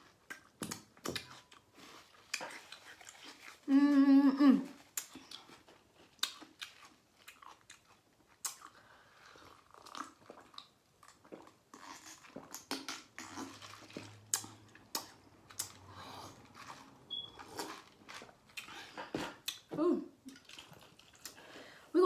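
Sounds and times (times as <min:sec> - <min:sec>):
close chewing and crunching: 0:00.0 - 0:21.6
person humming: 0:03.7 - 0:04.8, 0:19.7 - 0:20.1
wet mouth clicks: 0:06.2 - 0:06.8.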